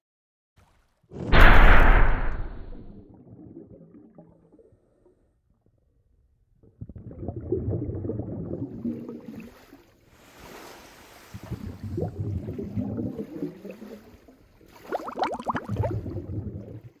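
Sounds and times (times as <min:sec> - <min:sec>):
ocean water lapping: 0:09.1 - 0:15.2.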